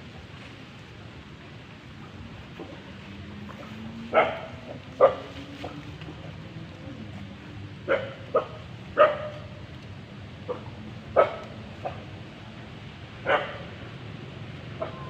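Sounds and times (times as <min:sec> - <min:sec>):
animal barking calls: 0:03.6 - 0:06.3, 0:07.8 - 0:09.6, 0:10.4 - 0:12.1, 0:13.2 - 0:13.7, 0:14.7 - 0:15.0.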